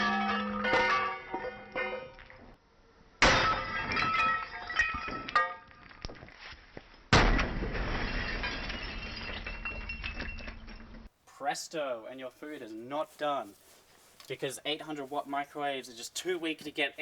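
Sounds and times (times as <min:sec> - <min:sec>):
smashing impacts: 0:03.2 - 0:05.9, 0:07.1 - 0:10.7
clattering debris: 0:03.2 - 0:06.4, 0:07.2 - 0:11.1.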